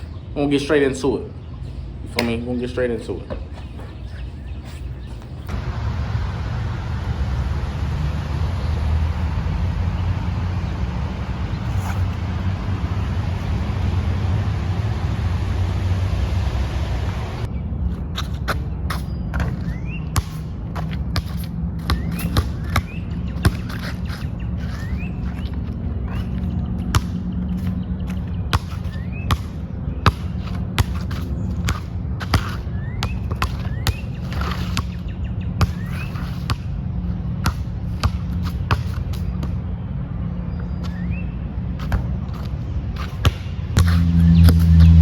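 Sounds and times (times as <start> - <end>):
low background rumble: 5.2 - 17.9
basketball bouncing: 18.5 - 35.0, 35.6 - 36.7, 37.3 - 39.6, 41.8 - 44.9.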